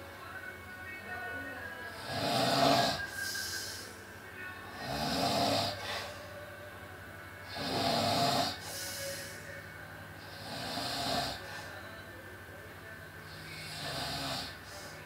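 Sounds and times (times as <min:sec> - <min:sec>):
person snoring heavily: 0:02.0 - 0:03.9, 0:04.7 - 0:06.3, 0:07.5 - 0:09.4, 0:10.2 - 0:11.8, 0:13.3 - 0:15.0.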